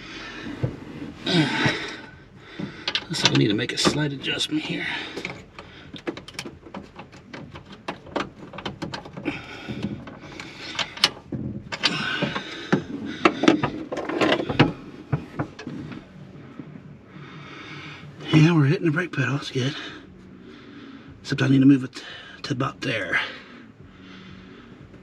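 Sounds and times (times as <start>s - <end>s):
rustling and scraping: 0.0s - 18.8s
clicks and light knocks: 2.6s - 4.2s, 5.2s - 16.0s.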